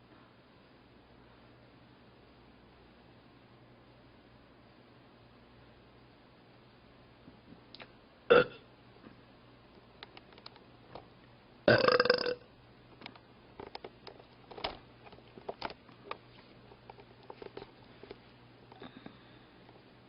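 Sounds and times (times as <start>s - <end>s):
woman burping: 8.3s - 8.6s, 11.7s - 12.4s.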